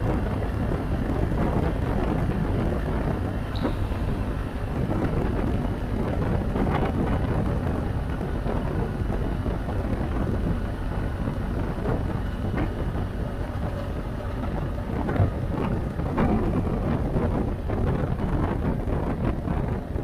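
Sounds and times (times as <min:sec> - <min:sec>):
wind buffeting microphone: 0:00.0 - 0:20.0.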